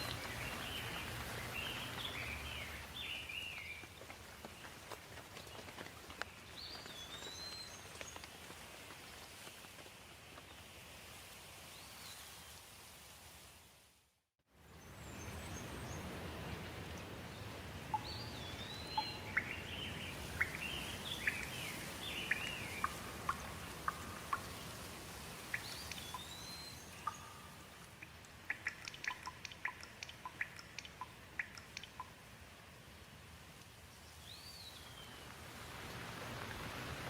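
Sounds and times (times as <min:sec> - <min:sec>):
songbird singing: 0:00.0 - 0:04.7, 0:14.7 - 0:32.2, 0:33.9 - 0:35.3
steady rain: 0:00.0 - 0:14.0, 0:14.7 - 0:37.0.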